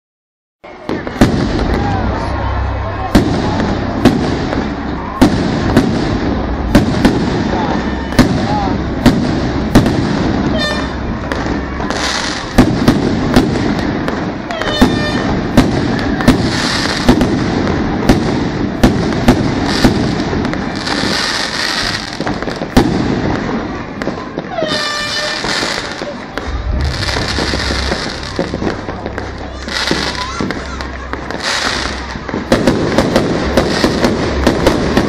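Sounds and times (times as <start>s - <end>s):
falling firework whistles: 14.5s - 17.2s
hissing crackle effects: 25.8s - 32.5s.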